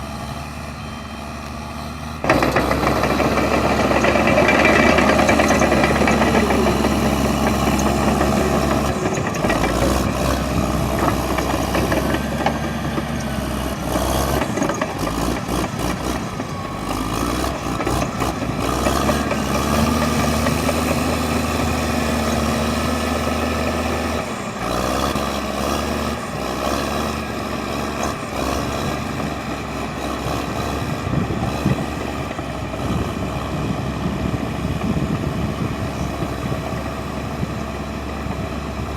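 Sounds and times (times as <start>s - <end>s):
vehicle engines idling: 0.0s - 38.9s.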